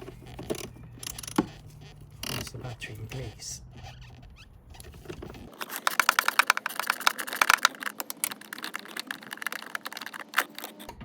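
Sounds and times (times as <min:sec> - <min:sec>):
socket ratchet clicking: 0:00.4 - 0:01.5, 0:05.6 - 0:10.9.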